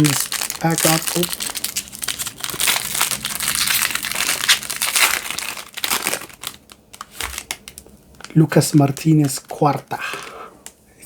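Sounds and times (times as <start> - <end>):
wrapper tearing and crinkling: 0.0 - 9.5.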